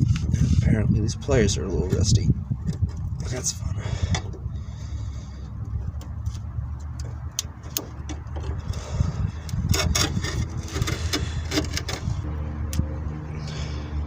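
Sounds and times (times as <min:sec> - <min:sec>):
steady low rumble: 0:00.0 - 0:14.0
pliers scraping metal: 0:09.4 - 0:12.8.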